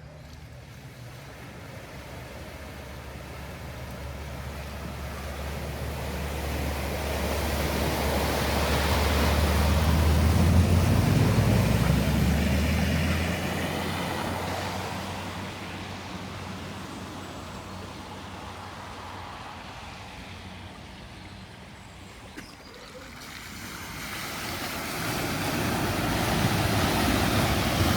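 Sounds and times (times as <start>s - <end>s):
vehicle engine hum: 0.0s - 27.9s
water spray rushing: 2.0s - 15.2s, 22.2s - 27.9s.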